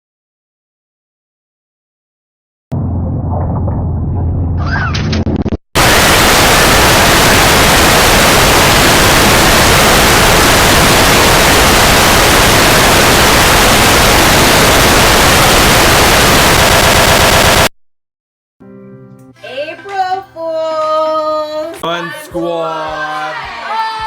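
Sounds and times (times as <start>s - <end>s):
low rumbling noise: 2.7s - 17.7s
white-noise static: 5.8s - 17.7s.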